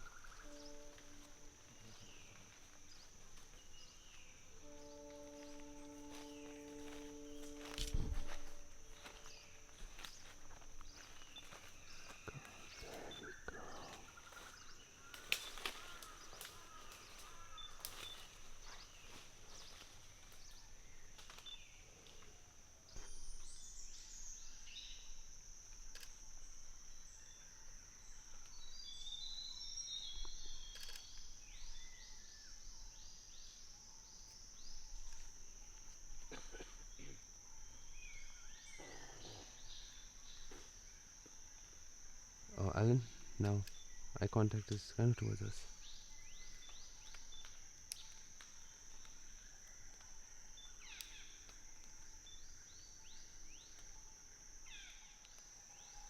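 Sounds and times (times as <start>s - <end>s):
high insect drone: 0.0s - 56.0s
branches crackling and snapping: 2.0s - 4.3s, 5.0s - 23.7s, 25.3s - 27.1s, 43.2s - 45.0s, 45.6s - 55.9s.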